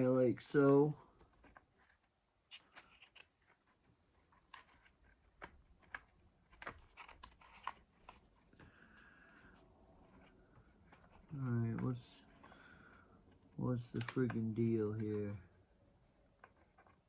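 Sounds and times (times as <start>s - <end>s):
small parts and tools clicking: 0.4s - 8.6s, 9.4s - 17.0s.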